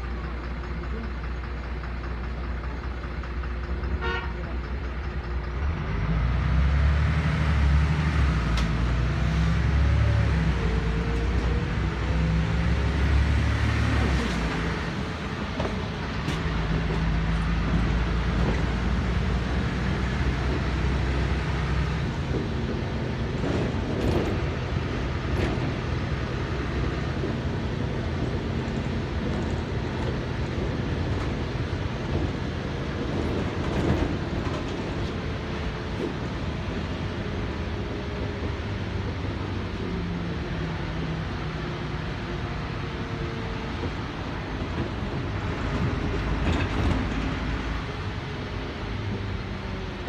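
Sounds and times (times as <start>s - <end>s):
bus diesel engine hum: 0.0s - 50.0s
road noise: 0.0s - 50.0s
rattles and knocks from bus body: 12.6s - 37.1s, 43.2s - 48.0s.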